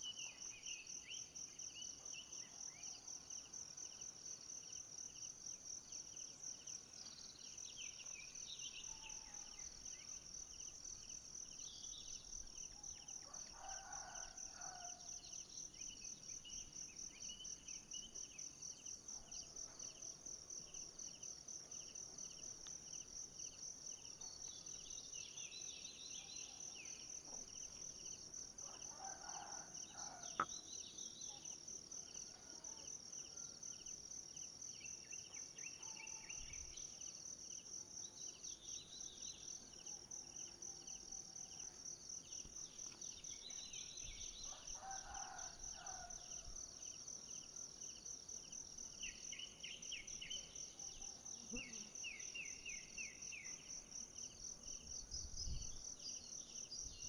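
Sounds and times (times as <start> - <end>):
low pulsed insect chirping: 0.0 - 28.7.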